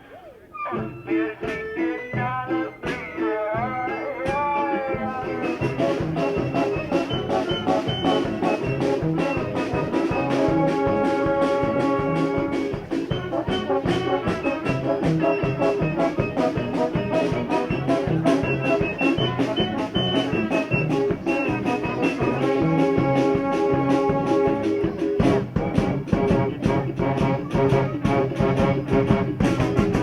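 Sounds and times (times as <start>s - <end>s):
brass street band playing: 0.0s - 30.0s
steady drum beat: 0.8s - 30.0s.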